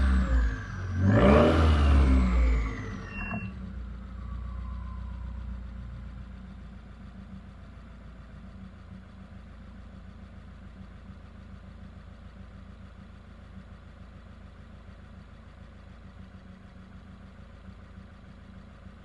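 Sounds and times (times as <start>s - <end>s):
turbo whine: 0.0s - 5.9s
car engine idling: 0.0s - 19.0s.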